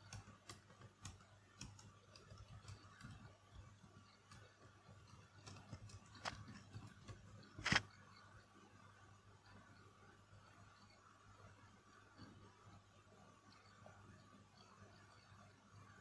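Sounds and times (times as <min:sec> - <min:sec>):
keyboard typing: 0:00.0 - 0:07.9.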